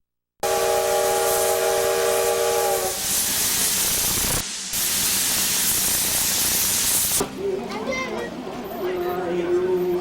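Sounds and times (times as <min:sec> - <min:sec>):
steam locomotive whistle: 0:00.4 - 0:03.4
escaping steam hissing: 0:00.5 - 0:07.2.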